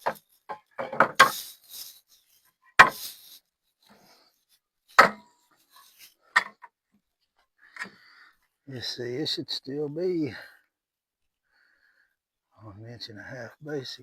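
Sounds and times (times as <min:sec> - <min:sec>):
wooden boards knocking: 0:00.0 - 0:01.4, 0:02.8 - 0:03.0, 0:05.0 - 0:05.2.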